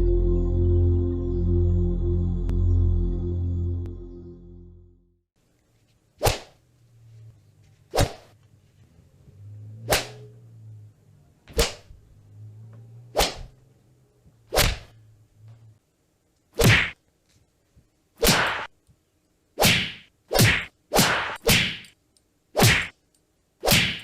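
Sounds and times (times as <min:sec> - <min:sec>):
punch and slap hits: 0:06.2 - 0:06.6, 0:07.9 - 0:08.4, 0:09.9 - 0:10.2, 0:11.5 - 0:11.9, 0:13.2 - 0:13.5, 0:14.5 - 0:14.9, 0:16.6 - 0:17.0, 0:18.2 - 0:18.7, 0:19.6 - 0:21.8, 0:22.6 - 0:23.0, 0:23.6 - 0:24.0.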